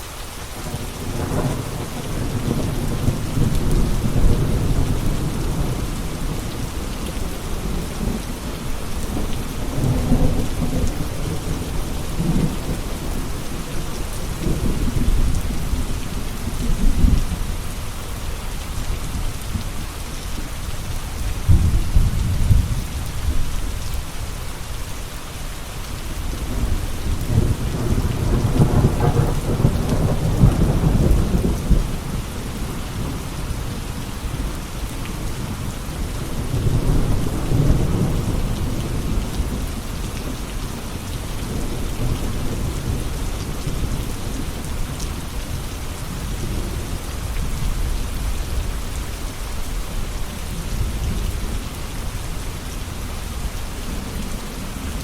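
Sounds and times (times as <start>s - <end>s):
steady rain: 0.0s - 55.0s
rolling thunder: 21.4s - 23.5s, 26.4s - 32.1s.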